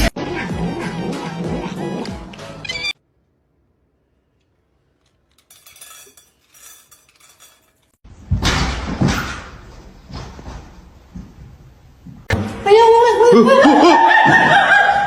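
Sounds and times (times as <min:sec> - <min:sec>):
faint clinks: 0:05.0 - 0:07.9
clatter of hard objects: 0:05.0 - 0:08.0.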